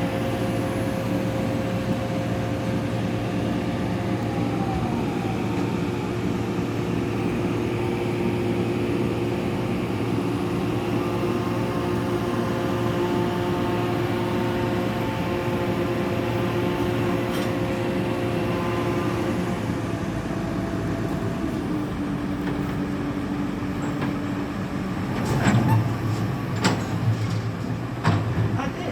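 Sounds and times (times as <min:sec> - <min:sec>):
crane diesel engine running: 0:00.0 - 0:28.0.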